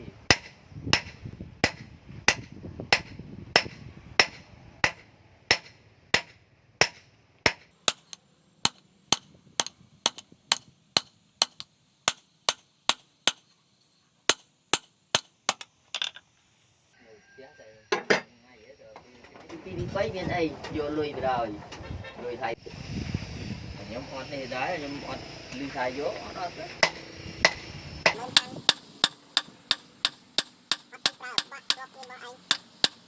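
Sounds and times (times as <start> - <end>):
hammer striking metal on anvil: 0.3 - 13.6, 14.3 - 16.2, 28.2 - 33.0.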